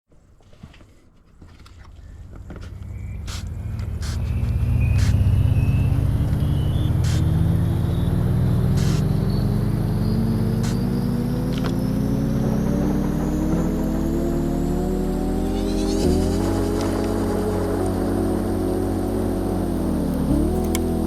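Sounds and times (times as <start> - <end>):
faint high whine: 1.9 - 21.0
motor running: 2.3 - 21.0
clicks: 20.1 - 21.0.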